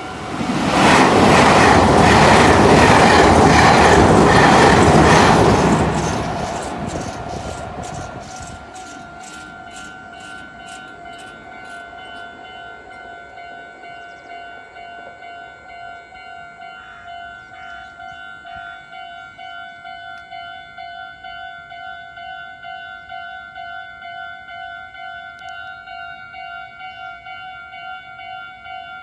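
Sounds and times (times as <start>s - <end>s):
train rumble and wheel clatter: 0.0s - 13.6s
railroad crossing bell clanging: 0.0s - 29.0s.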